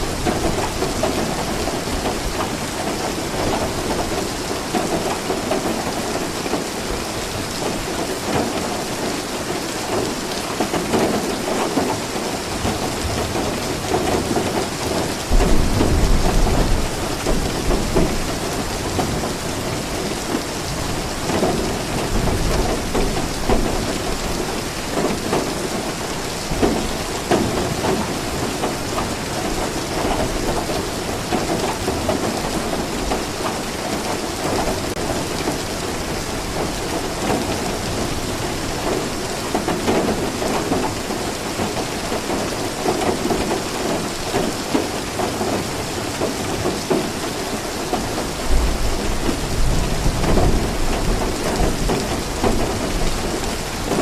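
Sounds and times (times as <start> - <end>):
heavy rain falling: 0.0 - 54.0
low rumble of thunder: 12.6 - 25.8.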